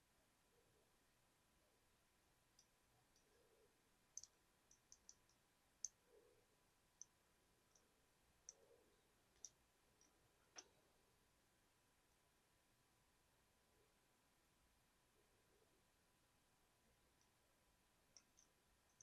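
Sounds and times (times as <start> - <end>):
faint light clicks: 4.1 - 6.0, 9.3 - 10.8.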